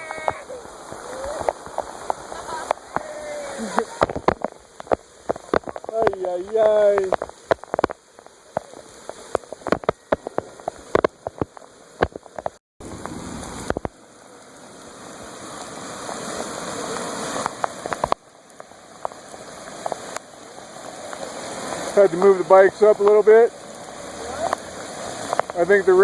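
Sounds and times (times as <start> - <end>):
heavy rain falling: 0.0 - 26.0
raindrops striking close by: 0.0 - 26.0.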